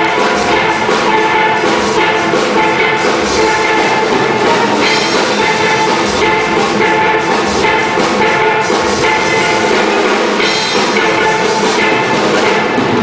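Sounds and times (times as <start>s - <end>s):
steady drum beat: 0.0s - 13.0s
steel pans playing melody: 0.0s - 13.0s.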